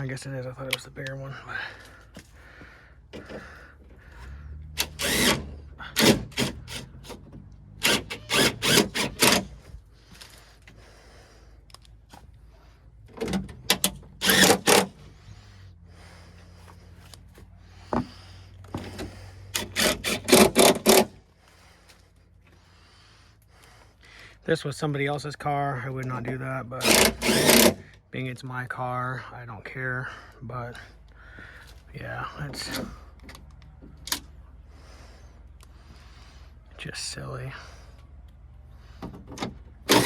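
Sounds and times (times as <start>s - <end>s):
ratchet wrench clicking: 4.8s - 7.0s, 7.8s - 9.6s, 13.7s - 14.9s, 19.5s - 21.1s, 26.8s - 27.8s.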